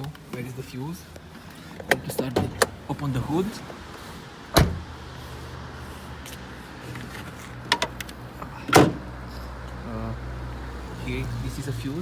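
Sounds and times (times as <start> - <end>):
car bonnet latch clunks: 4.5 - 4.9, 8.7 - 9.0.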